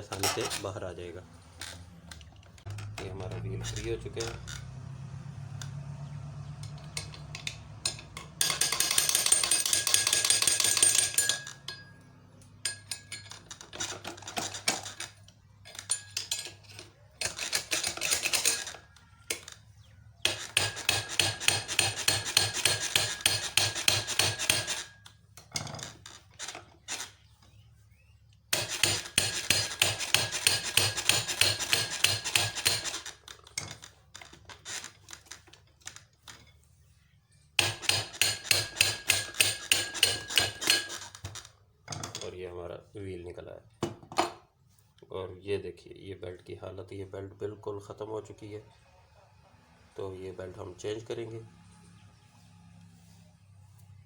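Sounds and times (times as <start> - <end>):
metallic tapping and scraping: 0.0 - 27.7, 28.3 - 36.8, 37.5 - 42.4.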